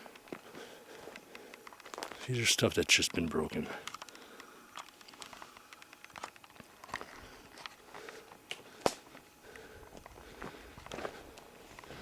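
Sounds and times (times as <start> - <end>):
footsteps through undergrowth: 1.8 - 2.4, 9.9 - 12.0.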